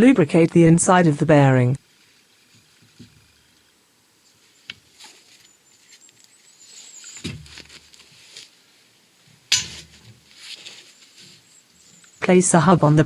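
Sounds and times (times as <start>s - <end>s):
tools clicking and tapping: 9.5s - 10.0s
parts clattering: 9.5s - 11.0s.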